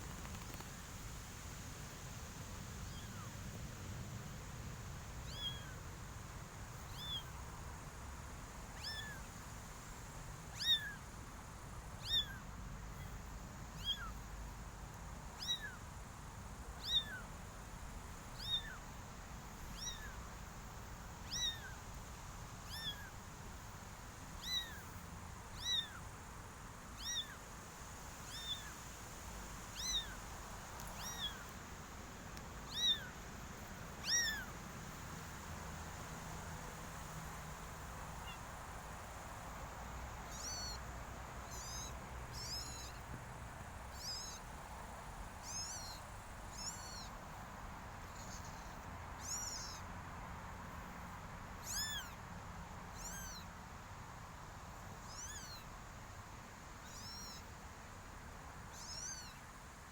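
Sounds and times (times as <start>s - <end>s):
kitten mewing: 12.0s - 12.4s, 16.8s - 17.2s, 21.3s - 21.8s, 32.7s - 33.1s, 34.0s - 34.5s, 51.6s - 52.2s, 53.0s - 53.4s.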